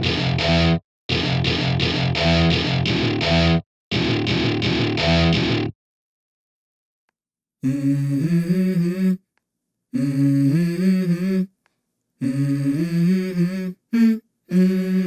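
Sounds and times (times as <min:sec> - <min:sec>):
hummed vocal melody: 0:07.6 - 0:15.0.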